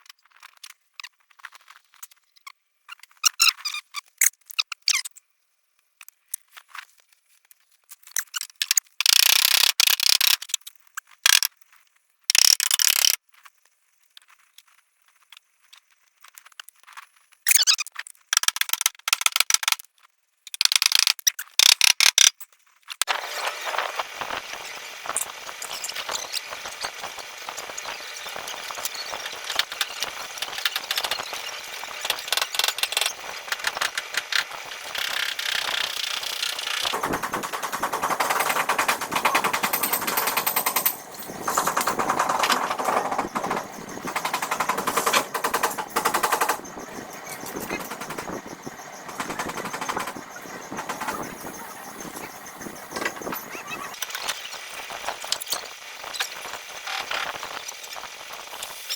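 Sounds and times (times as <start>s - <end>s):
rapid tapping on car panel: 36.9s - 53.5s.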